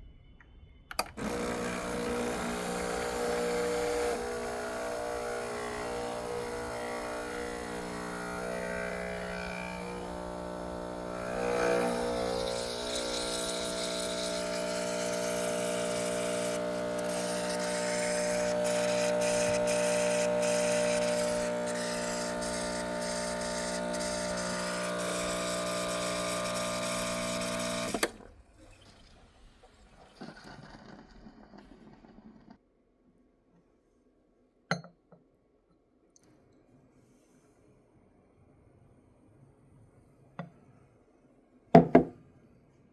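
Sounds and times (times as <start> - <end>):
espresso machine pump humming: 1.0 - 28.3.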